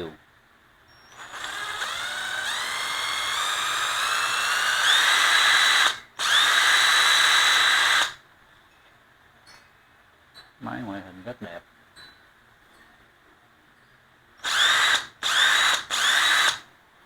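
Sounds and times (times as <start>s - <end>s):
cordless drill motor whine: 1.0s - 8.2s, 14.4s - 16.6s.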